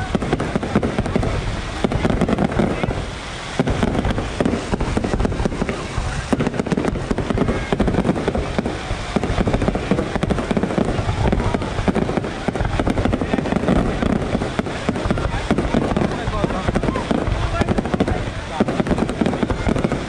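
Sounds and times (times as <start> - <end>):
fireworks bangs and crackles: 0.0 - 20.0.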